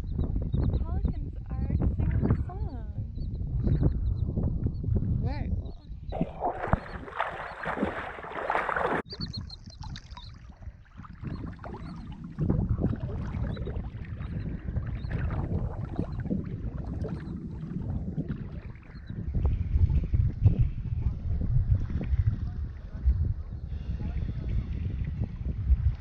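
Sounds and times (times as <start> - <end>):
sea water splashing and sloshing: 6.1 - 19.7.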